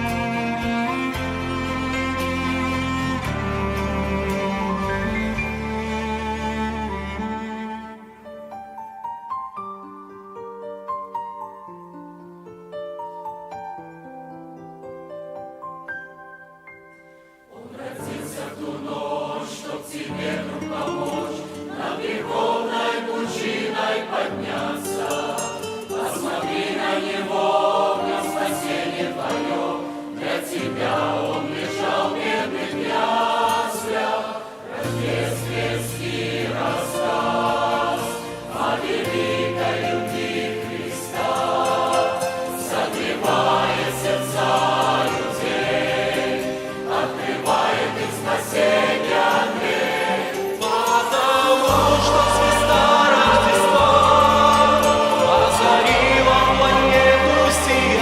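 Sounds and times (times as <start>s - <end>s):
choir singing in parts: 0.0s - 5.4s, 17.5s - 58.0s.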